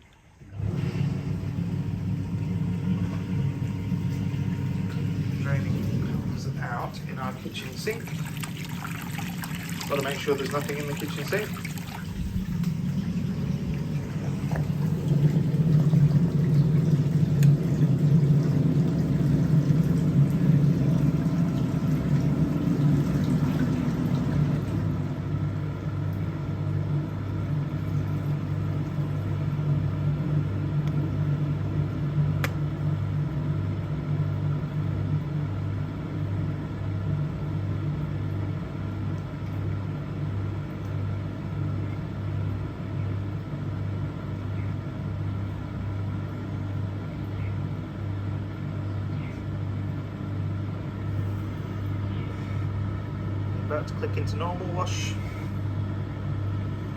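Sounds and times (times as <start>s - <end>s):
dishwasher drain pump humming: 0.0s - 56.9s.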